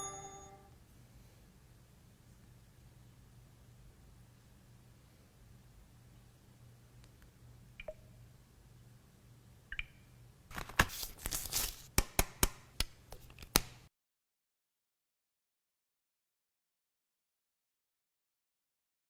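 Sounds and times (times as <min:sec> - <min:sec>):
packaging tearing and crackling: 0:10.5 - 0:11.9.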